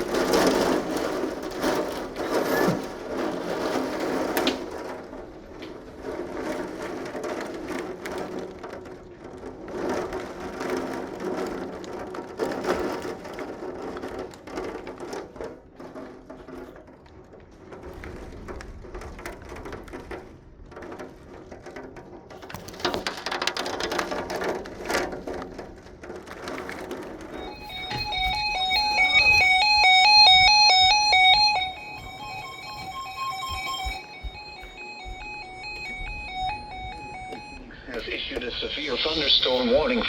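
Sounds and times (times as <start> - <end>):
rain on hard surfaces: 0.0 - 2.4.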